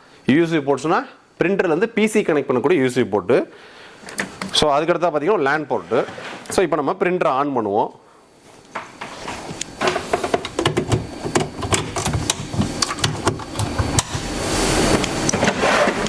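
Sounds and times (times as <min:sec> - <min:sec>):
printer mechanism clicking and whirring: 0:09.6 - 0:16.0
printer rushing noise: 0:09.8 - 0:16.0.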